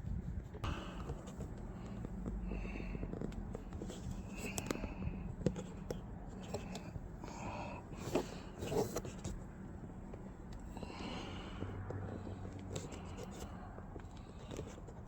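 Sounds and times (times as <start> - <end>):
light clicks and rustles: 0.4 - 7.0.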